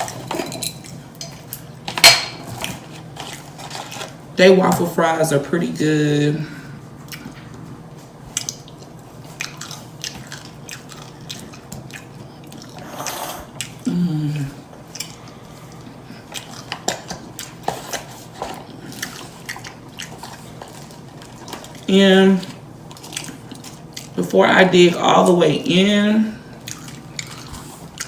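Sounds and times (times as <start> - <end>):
person chewing food: 6.9 - 24.2, 26.4 - 28.0
person humming: 13.8 - 14.6.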